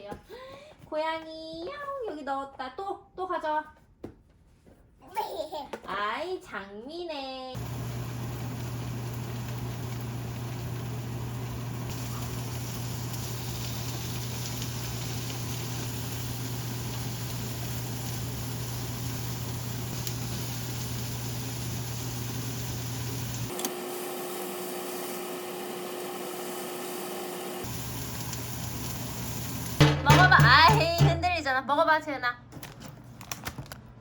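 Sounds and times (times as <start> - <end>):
even hiss: 7.6 - 23.6
machine hum: 7.6 - 31.3.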